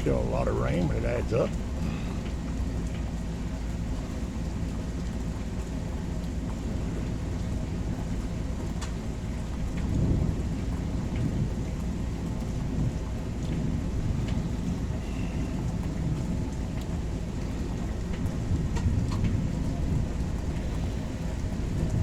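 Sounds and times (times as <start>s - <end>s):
steady rain: 0.0s - 22.0s
low thunder rumble: 9.6s - 17.2s.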